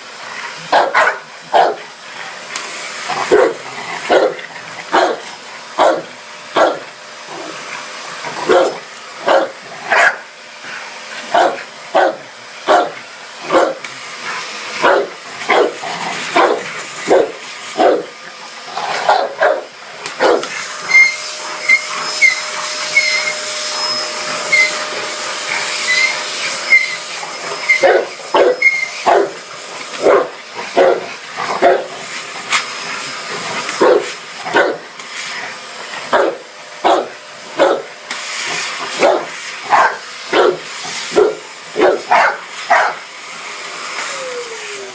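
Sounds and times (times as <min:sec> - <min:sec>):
vacuum cleaner whirring: 0:00.0 - 0:44.9
dog barking: 0:00.7 - 0:01.9, 0:03.3 - 0:05.2, 0:05.8 - 0:06.8, 0:08.4 - 0:10.3, 0:11.3 - 0:13.8, 0:14.8 - 0:18.1, 0:19.0 - 0:20.5, 0:27.7 - 0:29.4, 0:30.0 - 0:31.9, 0:33.8 - 0:34.8, 0:36.1 - 0:37.9, 0:39.0 - 0:43.0.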